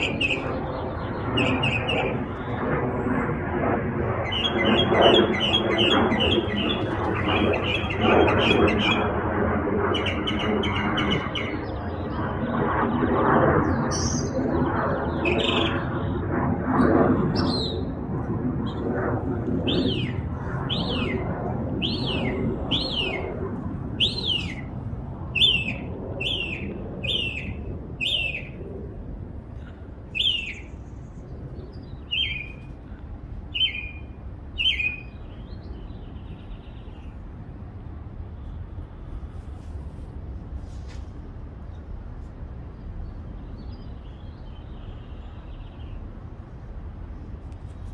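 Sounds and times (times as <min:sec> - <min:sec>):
songbird singing: 0:00.0 - 0:02.6, 0:04.2 - 0:09.1, 0:09.9 - 0:12.2, 0:15.0 - 0:16.2, 0:17.3 - 0:18.0, 0:19.5 - 0:28.6, 0:30.1 - 0:32.7, 0:33.5 - 0:37.2, 0:42.8 - 0:46.1.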